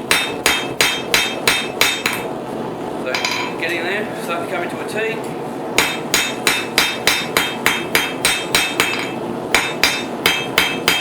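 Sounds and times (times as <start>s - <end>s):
hammer ringing on anvil: 0.1s - 2.2s, 5.8s - 11.0s.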